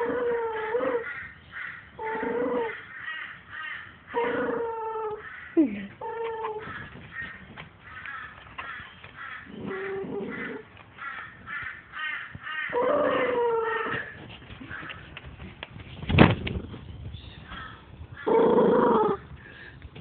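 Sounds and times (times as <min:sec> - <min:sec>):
dog growling and whining: 0:00.0 - 0:01.0, 0:02.0 - 0:02.8, 0:04.1 - 0:05.2, 0:12.8 - 0:14.1, 0:18.3 - 0:19.2.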